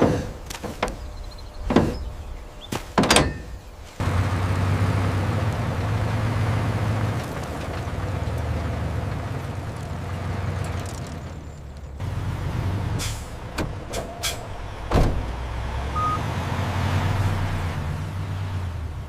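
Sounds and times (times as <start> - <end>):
sharp knocks: 0.0 - 2.1.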